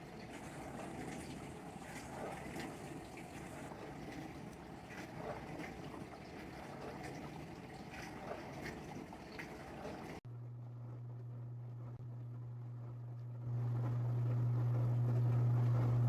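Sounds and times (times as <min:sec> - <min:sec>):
dishwasher humming: 0:00.0 - 0:10.2, 0:13.4 - 0:16.0
water spraying and splashing: 0:00.0 - 0:10.2.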